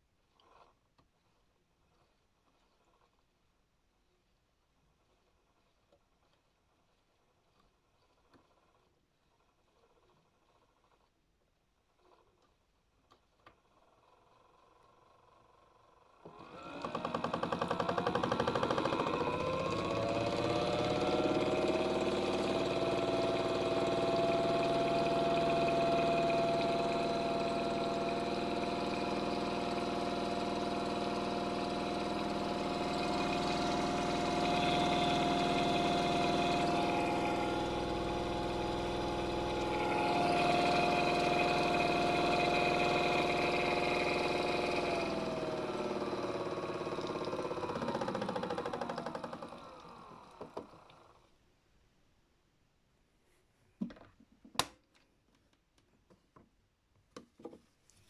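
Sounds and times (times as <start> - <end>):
small electric motor whining: 16.2 - 51.2.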